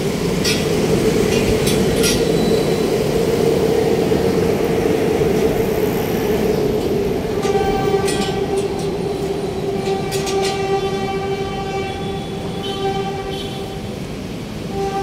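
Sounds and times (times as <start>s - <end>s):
train rumbling: 0.0s - 15.0s
train horn: 7.4s - 15.0s.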